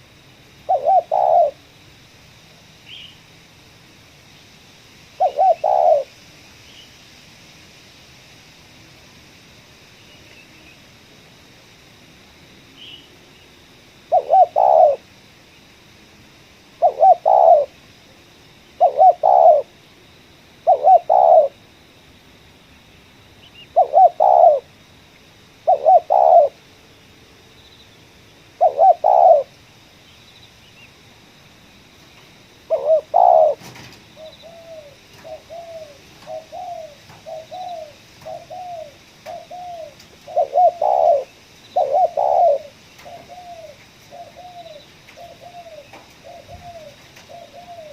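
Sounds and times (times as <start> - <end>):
dove cooing: 0.6 - 1.7, 5.2 - 6.1, 14.1 - 15.1, 16.8 - 17.8, 18.8 - 19.8, 20.6 - 21.6, 23.7 - 24.7, 25.6 - 26.6, 28.6 - 29.6, 32.6 - 47.9.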